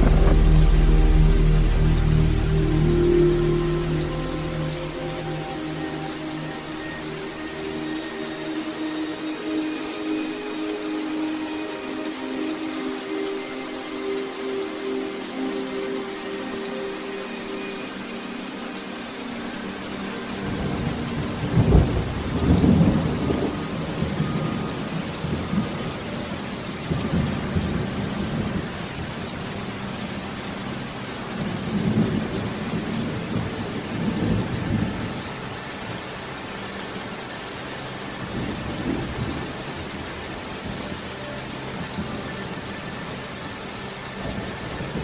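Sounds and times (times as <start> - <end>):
low thunder rumbling: 0.0 - 4.9
steady rain: 0.0 - 45.0.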